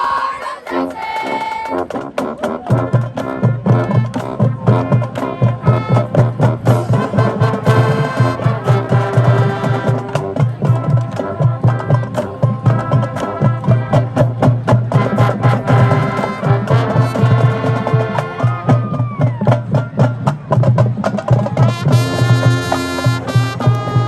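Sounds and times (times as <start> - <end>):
drumline beat: 0.0 - 24.0
marching band playing: 0.0 - 24.0
brass chord: 2.7 - 18.7, 21.7 - 24.0.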